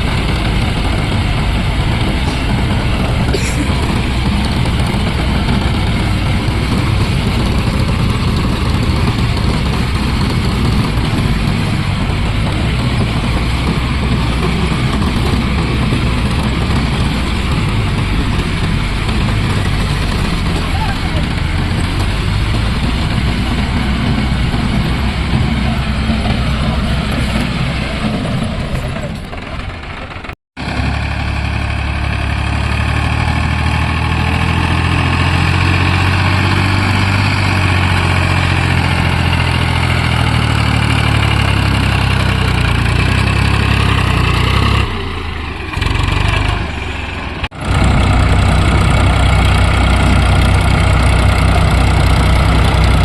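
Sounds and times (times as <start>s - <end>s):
tractor engine running: 0.0s - 53.0s.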